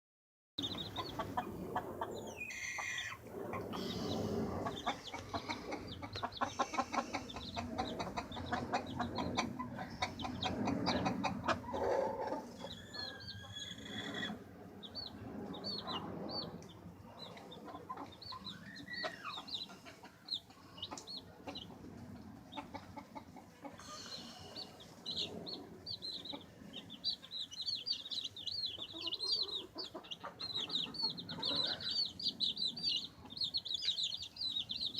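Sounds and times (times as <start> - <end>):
low clucking: 0.6 - 14.4
baby chicks chirping: 0.6 - 34.9.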